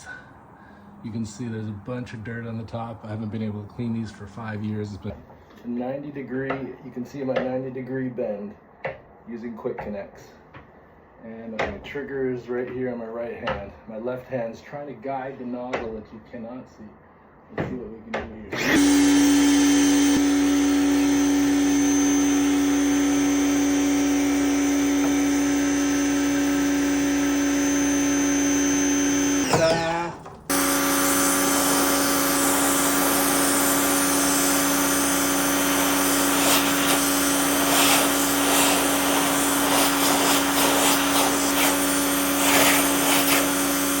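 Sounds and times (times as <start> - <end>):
pressure washer motor humming: 18.6 - 44.0
hissing water spray: 35.8 - 44.0.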